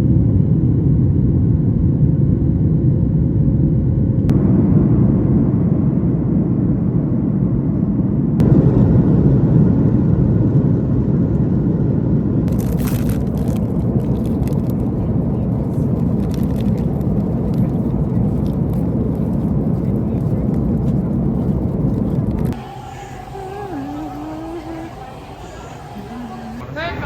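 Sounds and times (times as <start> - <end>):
vehicle rumble from inside: 10.7 - 27.0
crackling noise: 12.5 - 26.7.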